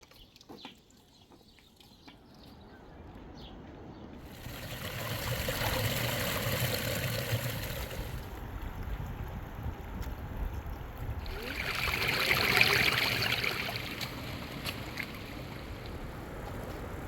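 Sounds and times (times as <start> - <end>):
flowing water rushing: 4.2 - 8.3, 11.2 - 17.0.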